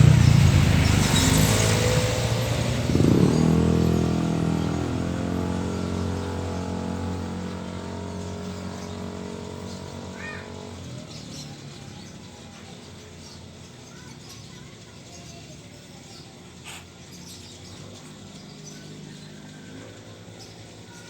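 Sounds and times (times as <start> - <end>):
vehicle engine humming: 0.0 - 21.0.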